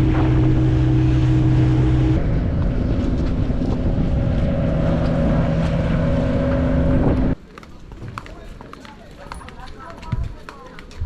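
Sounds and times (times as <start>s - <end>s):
boat engine running: 0.0s - 7.4s.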